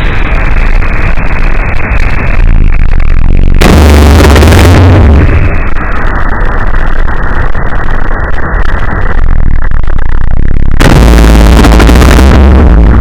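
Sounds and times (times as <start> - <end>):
distorted goat imitation: 10.8 - 13.0.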